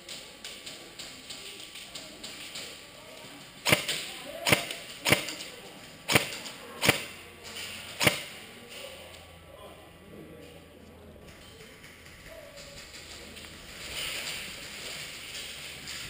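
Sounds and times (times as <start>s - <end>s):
airsoft gun shots with echo: 3.6s - 5.4s, 6.1s - 7.2s, 7.9s - 8.4s.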